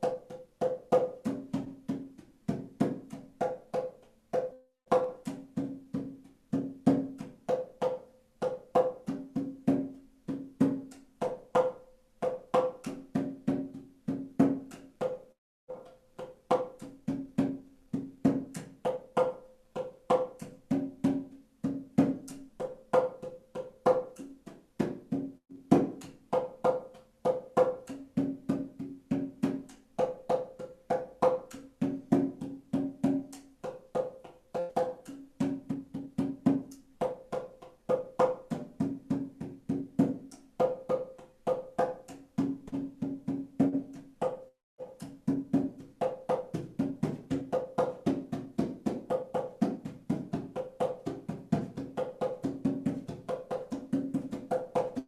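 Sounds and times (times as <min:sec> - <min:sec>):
hand percussion strikes: 0:00.0 - 0:55.0.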